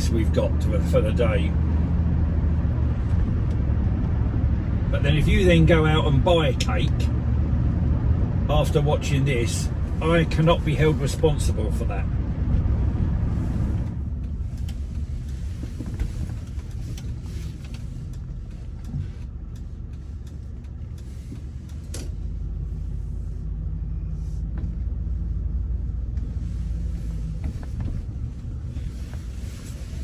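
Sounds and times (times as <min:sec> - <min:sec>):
car engine and road rumble: 0:00.0 - 0:30.0.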